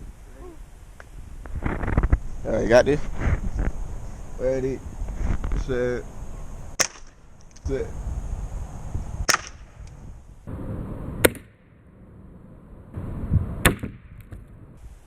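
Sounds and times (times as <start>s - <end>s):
air rifle shots: 6.7s - 7.6s, 9.2s - 9.9s, 11.2s - 11.6s, 13.6s - 14.4s.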